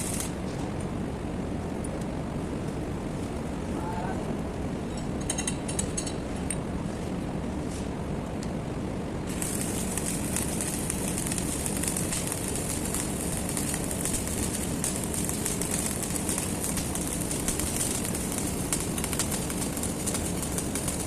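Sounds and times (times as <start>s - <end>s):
arc welding crackling: 0.0s - 0.5s, 9.2s - 21.0s.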